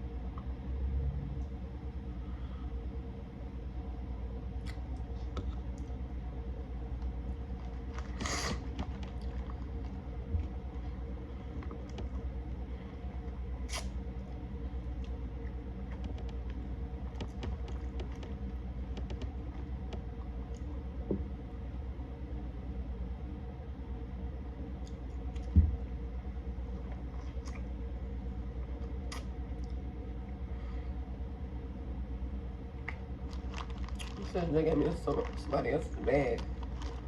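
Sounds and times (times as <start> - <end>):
steady low hum: 0.0 - 37.0
mouth clicks and smacks: 29.1 - 29.3.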